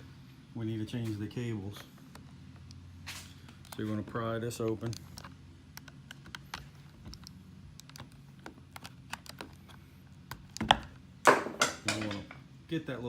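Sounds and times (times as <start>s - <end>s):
tool clicking and tapping on plastic: 4.6s - 12.4s.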